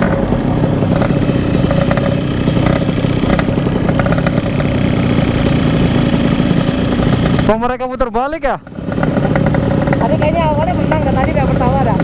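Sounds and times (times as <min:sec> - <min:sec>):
two-stroke motorcycle engine running: 0:00.0 - 0:12.0.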